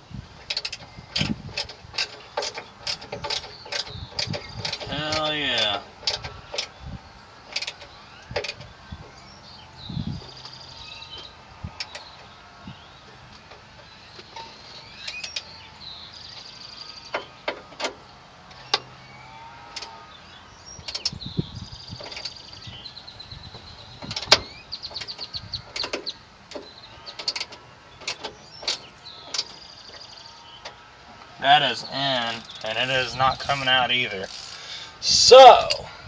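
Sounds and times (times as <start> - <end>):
ratchet clicks: 0.4 - 6.8, 24.0 - 30.0, 32.4 - 32.8, 33.5 - 34.8
short high squeaks: 31.4 - 35.8.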